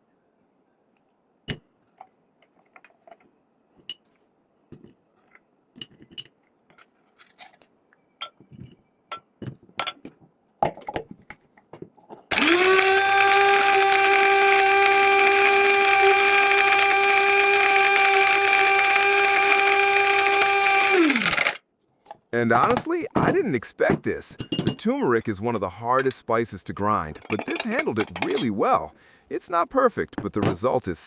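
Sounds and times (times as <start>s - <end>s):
electric spice grinder whining: 12.3s - 21.6s.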